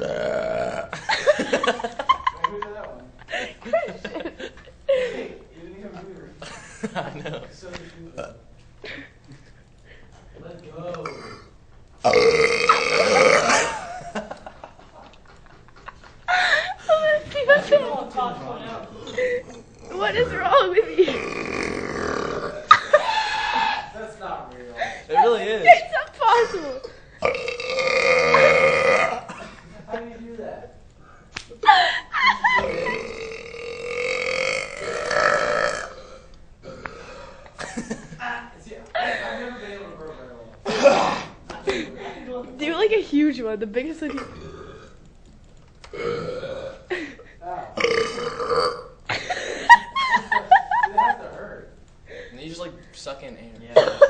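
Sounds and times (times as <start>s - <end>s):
long drawn-out belch: 0.0s - 1.0s, 11.0s - 13.8s, 21.1s - 22.6s, 27.2s - 29.3s, 32.6s - 37.4s, 44.1s - 45.0s, 45.9s - 46.8s, 47.8s - 48.9s
boy burping: 0.0s - 1.1s, 11.0s - 11.5s, 12.1s - 14.0s, 19.1s - 23.9s, 26.4s - 29.4s, 32.6s - 37.6s, 40.7s - 41.4s, 44.0s - 45.0s, 45.9s - 47.0s, 47.8s - 49.2s, 53.8s - 54.0s.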